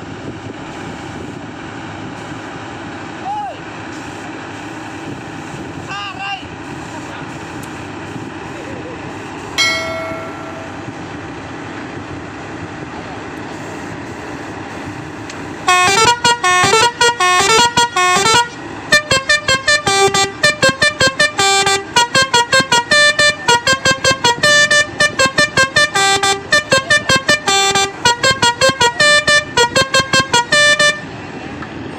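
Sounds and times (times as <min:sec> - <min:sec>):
musical air horn toots: 0:09.6 - 0:11.0, 0:15.6 - 0:31.1.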